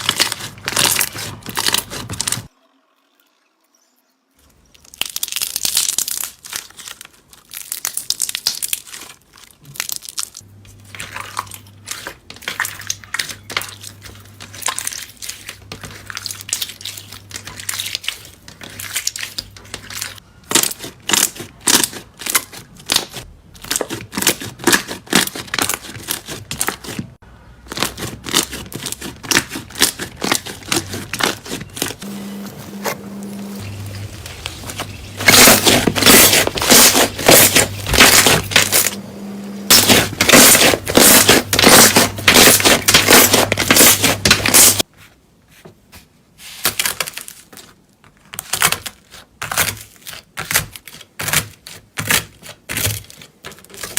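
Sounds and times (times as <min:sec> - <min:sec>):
slime crackling and popping: 0:04.7 - 0:10.4.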